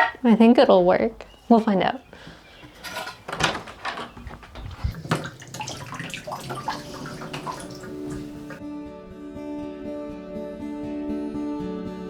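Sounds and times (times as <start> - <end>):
water splashing in a bathtub: 2.9 - 8.6.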